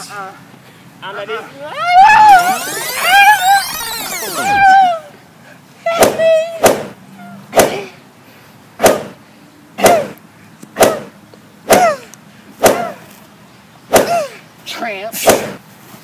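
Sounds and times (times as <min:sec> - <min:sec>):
short falling cry: 0:01.6 - 0:05.2
sharp smacks: 0:06.0 - 0:07.9, 0:08.8 - 0:09.2, 0:09.8 - 0:12.0, 0:12.6 - 0:13.0, 0:13.9 - 0:14.4, 0:15.2 - 0:15.6.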